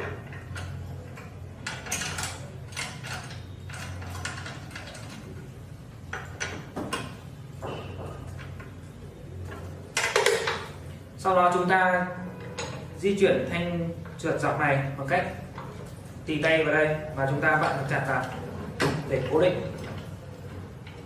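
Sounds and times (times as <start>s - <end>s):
spanner clicking and scraping on metal: 0.0s - 5.3s.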